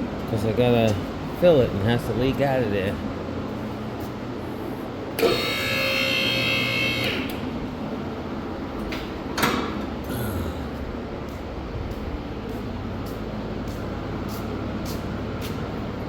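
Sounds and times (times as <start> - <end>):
hydraulic pump motor whining: 5.1 - 7.8.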